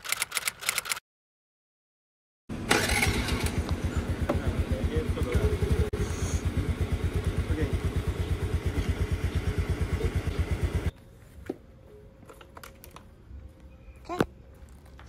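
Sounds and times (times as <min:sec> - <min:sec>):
scooter engine running: 0:02.5 - 0:10.9.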